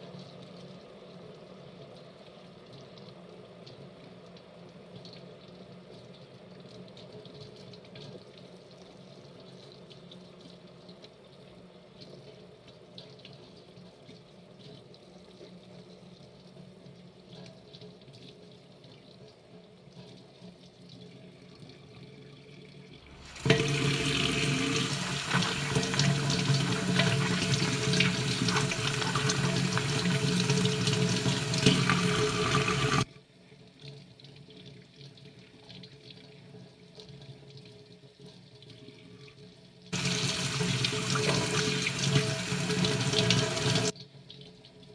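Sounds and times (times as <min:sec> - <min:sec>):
water running into sink: 0:23.0 - 0:33.1, 0:40.0 - 0:43.9
kitchen tap turning: 0:23.1 - 0:33.0, 0:40.0 - 0:43.9.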